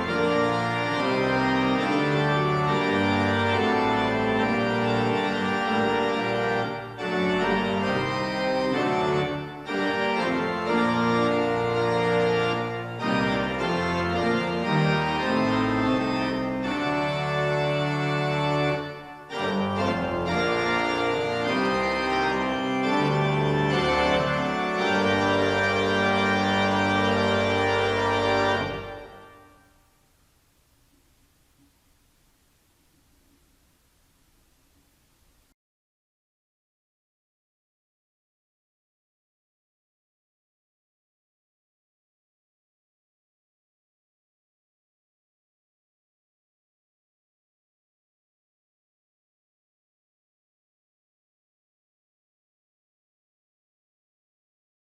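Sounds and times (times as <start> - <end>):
church organ playing chords: 0.0 - 29.8.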